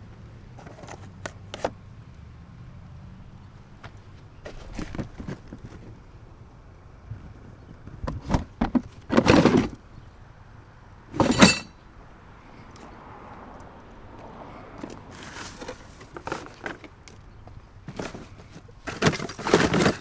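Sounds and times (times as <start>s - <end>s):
scrap metal knocking and clattering: 11.1s - 11.8s, 17.9s - 20.0s.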